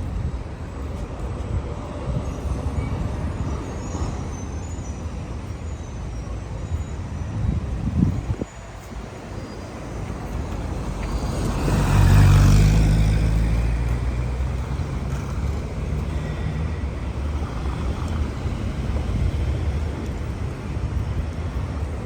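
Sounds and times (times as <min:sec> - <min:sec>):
low engine hum: 0:00.0 - 0:22.0
vehicle driving past: 0:10.4 - 0:20.4.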